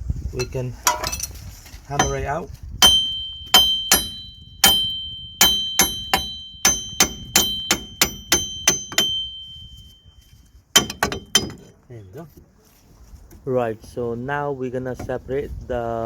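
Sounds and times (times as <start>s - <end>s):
hammer striking metal: 2.0s - 10.0s, 10.8s - 11.7s
high metallic ringing: 2.0s - 11.7s.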